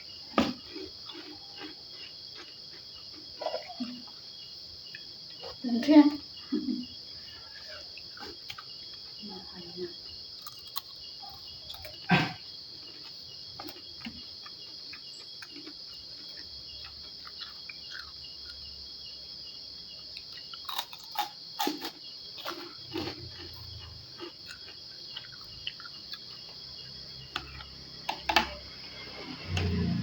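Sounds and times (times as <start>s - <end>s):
crickets chirping: 0.0s - 30.0s
eating clicks and crunches: 0.1s - 4.2s, 7.8s - 9.2s, 10.0s - 19.1s, 20.0s - 29.9s.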